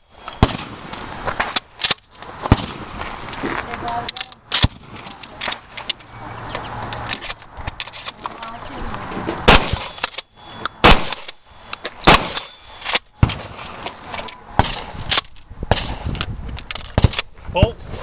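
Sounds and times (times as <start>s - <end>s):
loud shotgun shots: 0.4s - 1.6s, 2.5s - 2.9s, 4.5s - 5.0s, 9.4s - 10.2s, 10.8s - 11.4s, 12.0s - 13.6s, 14.6s - 16.1s, 17.0s - 17.3s.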